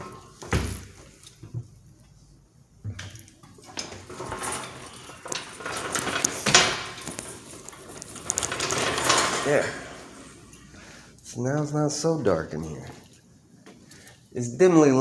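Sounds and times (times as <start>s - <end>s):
knocks and clinks: 3.0s - 10.7s
rustling: 3.5s - 11.1s.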